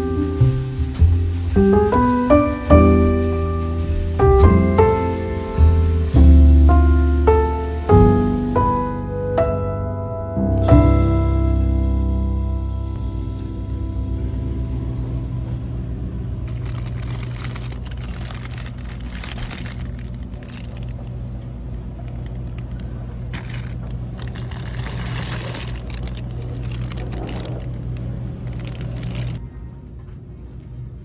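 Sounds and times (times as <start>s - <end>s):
rustling and crinkling: 0.0s - 7.6s, 16.4s - 29.4s
steady low hum: 10.2s - 31.0s.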